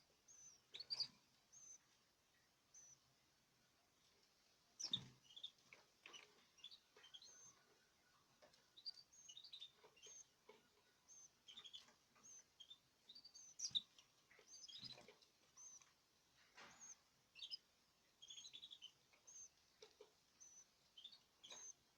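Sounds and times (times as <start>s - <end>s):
canaries chirping: 0.0s - 21.9s.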